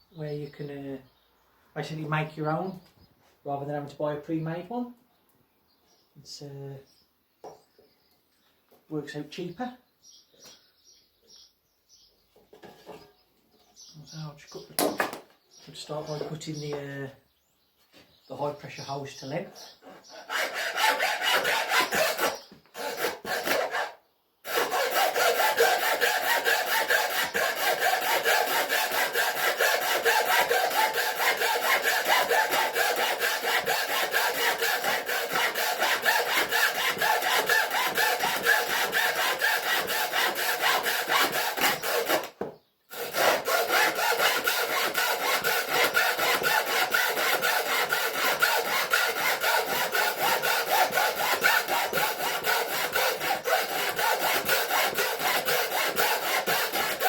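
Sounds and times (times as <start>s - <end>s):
saw cutting through hose: 19.8s - 57.0s.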